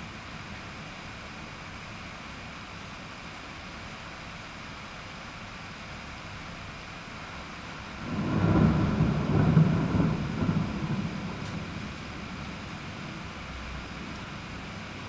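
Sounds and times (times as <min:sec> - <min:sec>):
thunder rumbling: 0:08.0 - 0:15.0.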